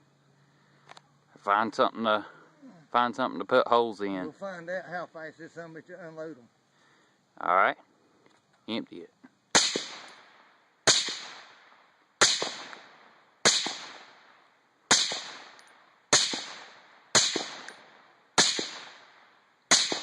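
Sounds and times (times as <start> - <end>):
suppressed rifle shots echoing: 9.5 - 20.0.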